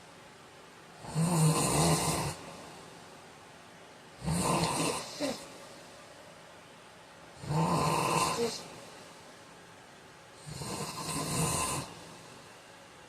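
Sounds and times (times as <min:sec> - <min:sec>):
man snoring: 0:01.0 - 0:02.8, 0:04.2 - 0:05.6, 0:07.4 - 0:08.8, 0:10.4 - 0:12.4.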